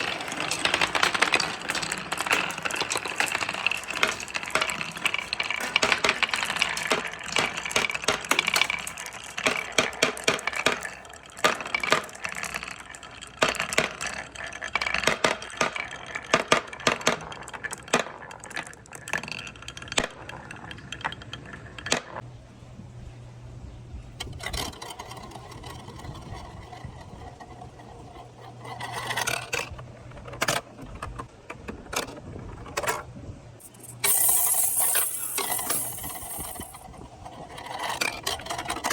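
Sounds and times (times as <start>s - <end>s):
marbles clacking down a track: 0.0s - 22.2s, 33.6s - 38.9s
marbles clattering: 0.0s - 22.2s, 33.6s - 38.9s.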